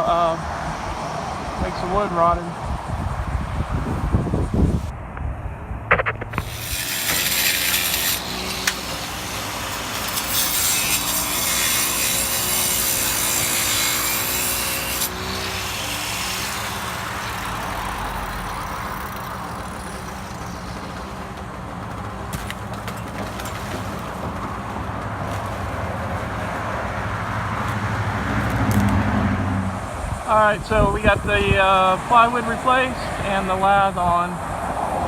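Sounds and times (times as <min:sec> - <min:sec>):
working noise: 0:05.9 - 0:29.0
power saw cutting: 0:06.3 - 0:23.7.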